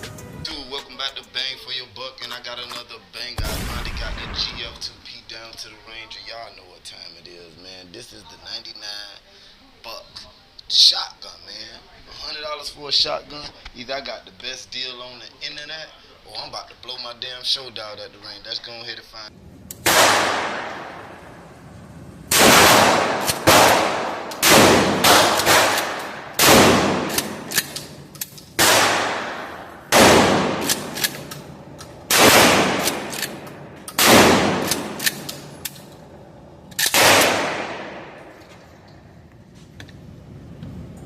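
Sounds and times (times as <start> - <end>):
shotgun shots echoing: 3.4 - 5.2, 19.8 - 21.6, 22.3 - 38.9.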